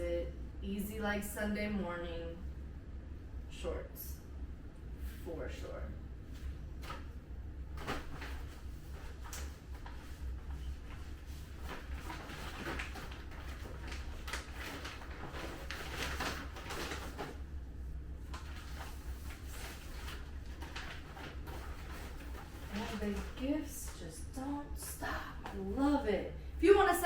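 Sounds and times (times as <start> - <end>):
steady low hum: 0.0 - 27.0
packaging rustling and crinkling: 7.8 - 17.4, 18.2 - 23.8.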